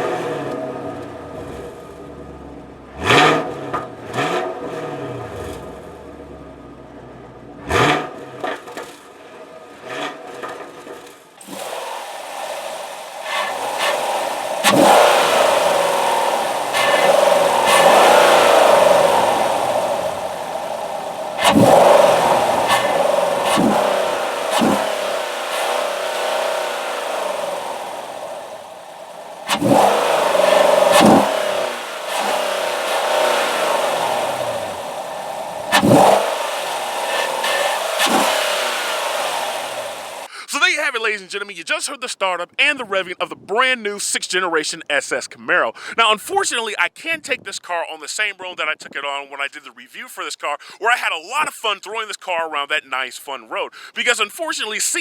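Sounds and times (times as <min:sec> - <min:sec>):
car engine revving: 0:00.0 - 0:40.3.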